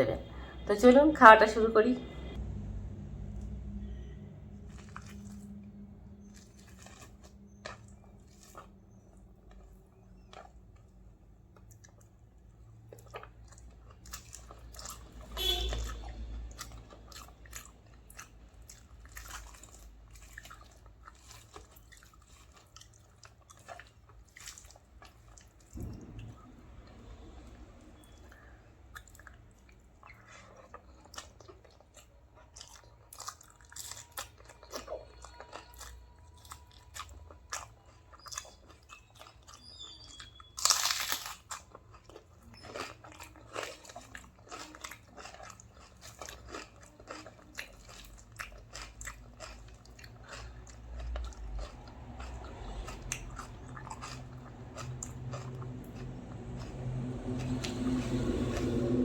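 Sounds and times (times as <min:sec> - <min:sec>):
chewing and crunching food: 0:02.2 - 0:59.0.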